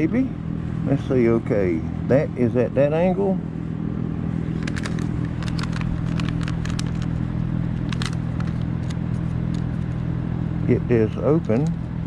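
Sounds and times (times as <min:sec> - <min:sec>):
low mechanical hum: 0:00.0 - 0:12.0
plastic bag crackling: 0:04.6 - 0:07.2.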